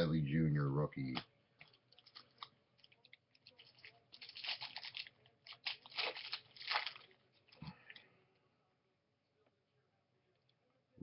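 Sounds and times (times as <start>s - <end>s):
foil wrapper tearing and crumpling: 1.9s - 7.3s.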